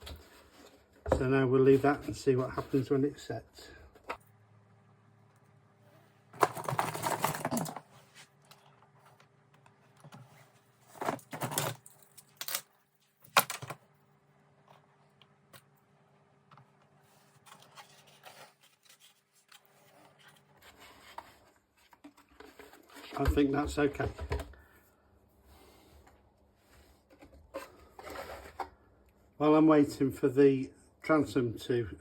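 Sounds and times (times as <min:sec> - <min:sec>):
small objects rattling on workbench: 0:06.4 - 0:07.9.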